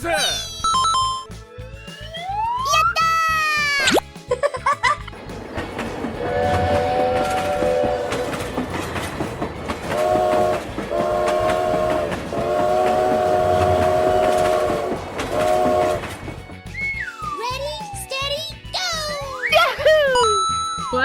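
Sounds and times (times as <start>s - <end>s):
wheels clattering on rail joints: 4.8s - 17.0s
train horn chord blasts: 6.2s - 8.6s, 9.8s - 16.4s.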